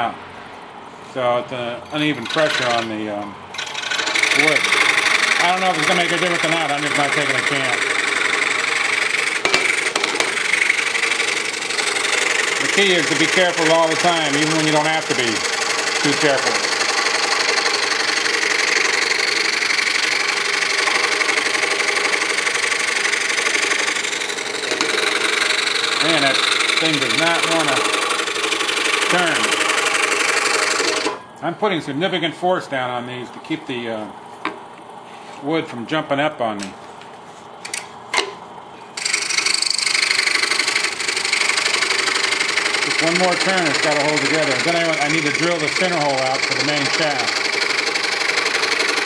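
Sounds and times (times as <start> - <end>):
scroll saw cutting wood: 2.1 - 31.2, 39.0 - 49.0.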